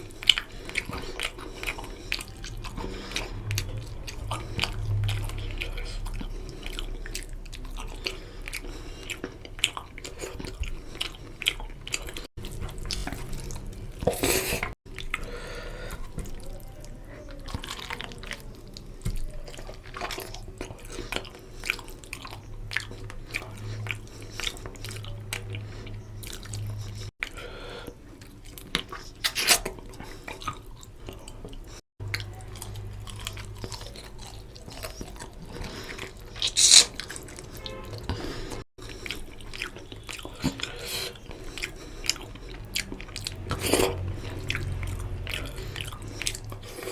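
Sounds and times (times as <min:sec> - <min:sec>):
mouth clicks and smacks: 0:00.0 - 0:15.3, 0:28.2 - 0:30.7, 0:32.0 - 0:38.2
person chewing food: 0:00.0 - 0:46.9.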